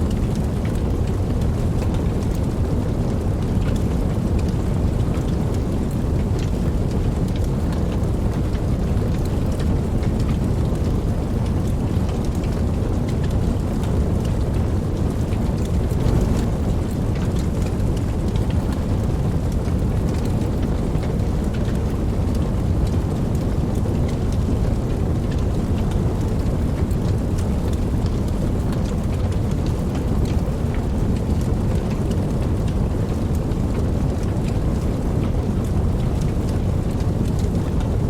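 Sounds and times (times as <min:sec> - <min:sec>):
raindrops ticking: 0:00.0 - 0:38.0
steady rain hiss: 0:00.0 - 0:38.0.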